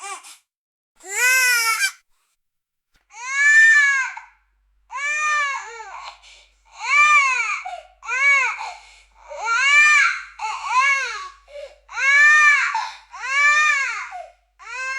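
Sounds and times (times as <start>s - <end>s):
baby gasping: 1.0s - 2.0s
newborn baby crying: 1.0s - 2.0s.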